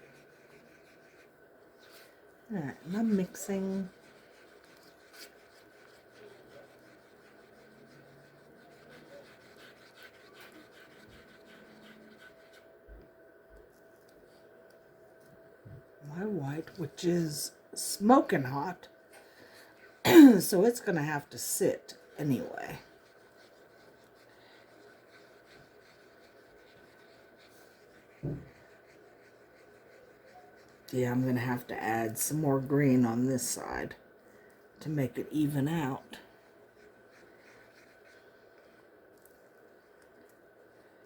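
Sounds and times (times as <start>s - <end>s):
stick stirring a cup: 0.0s - 12.8s, 22.0s - 31.7s
faint steady hum: 0.0s - 41.0s.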